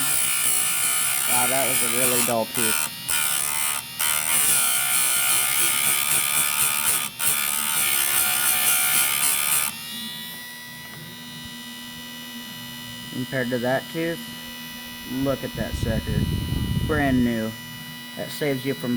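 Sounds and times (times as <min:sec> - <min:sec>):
grinding wheel grinding chain: 0:00.0 - 0:09.7
electric hum: 0:00.0 - 0:18.9.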